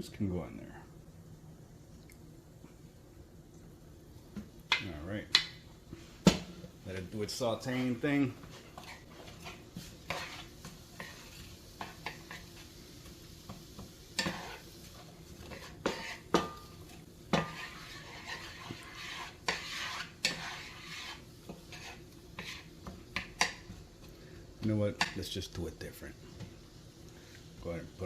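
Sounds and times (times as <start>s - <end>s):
faint food sizzling: 0.0s - 28.0s
spoon scraping frying pan: 7.2s - 24.2s, 24.9s - 25.4s.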